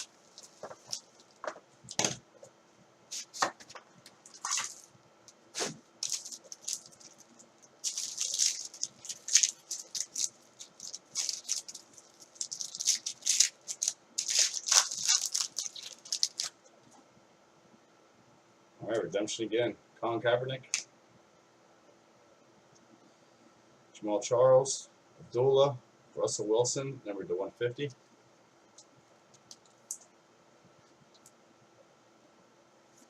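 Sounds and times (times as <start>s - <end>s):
plastic wrap crinkling: 0.0s - 2.2s, 3.1s - 16.6s
cards being handled: 3.1s - 4.9s.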